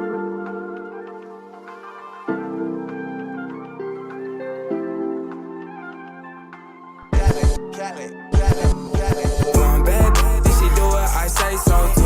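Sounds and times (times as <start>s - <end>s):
hip hop beat with heavy bass: 0.0s - 12.0s.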